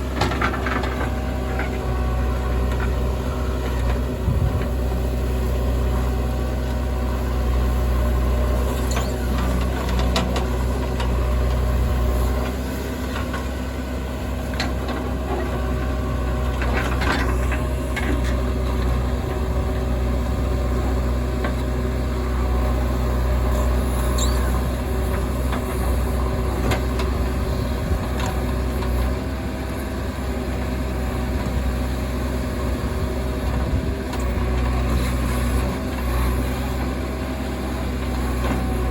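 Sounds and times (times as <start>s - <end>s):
diesel engine running: 0.0s - 38.9s.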